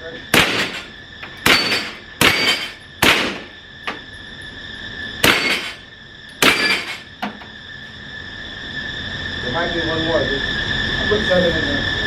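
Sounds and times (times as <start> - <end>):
suppressed gunshots: 0.3 - 0.8, 1.4 - 3.5.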